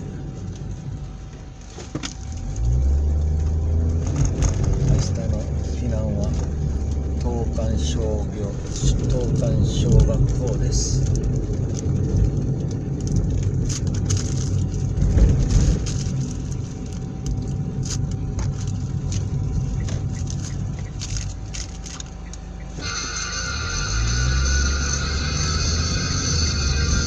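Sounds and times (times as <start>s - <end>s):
car engine and road rumble: 0.0s - 27.0s
clicks and crackles: 9.1s - 22.9s.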